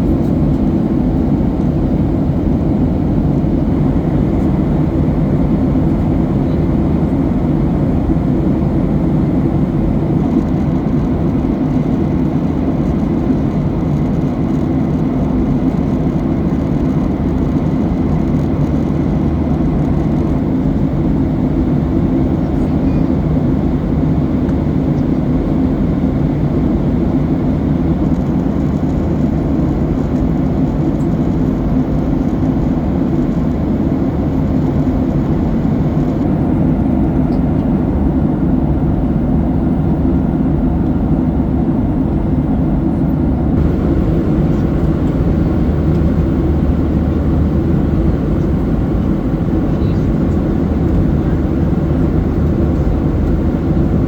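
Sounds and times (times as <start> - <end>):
airplane cabin drone: 0.0 - 54.0.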